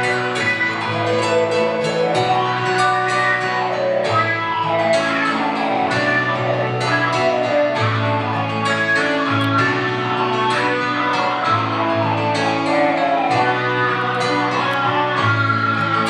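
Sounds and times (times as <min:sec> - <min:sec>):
piano and guitar playing: 0:00.0 - 0:16.0.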